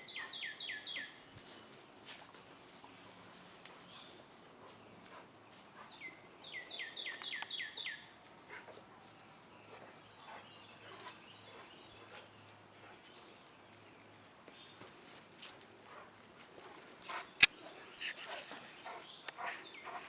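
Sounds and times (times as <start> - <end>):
bird singing whistled notes: 0.0 - 1.2, 6.1 - 8.0
faint ticks and rustles: 0.2 - 20.0.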